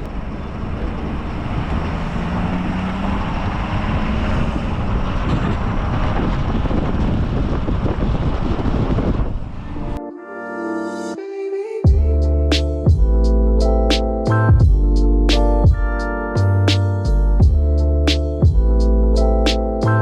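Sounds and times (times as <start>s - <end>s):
low engine rumble: 0.0s - 10.0s, 11.9s - 20.0s
wind and road noise: 0.0s - 10.0s.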